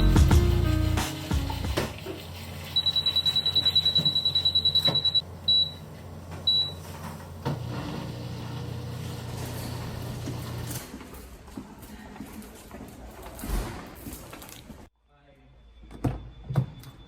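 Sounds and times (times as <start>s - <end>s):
electronic beeper beeping: 2.8s - 5.8s.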